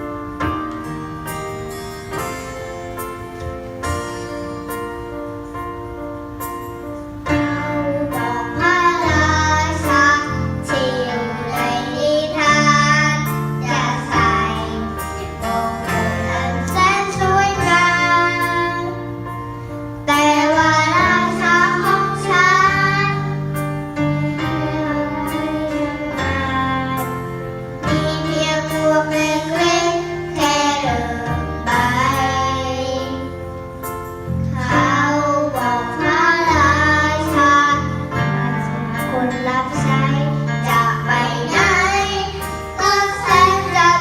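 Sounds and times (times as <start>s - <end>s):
instrumental backing track: 0.0s - 44.0s
girl singing: 7.1s - 19.3s, 20.0s - 33.5s, 34.4s - 44.0s.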